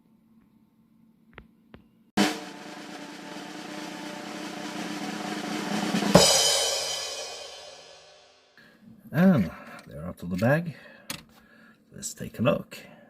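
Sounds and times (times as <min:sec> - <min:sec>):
drum roll: 0:02.2 - 0:08.4
cymbal crash: 0:02.2 - 0:08.6.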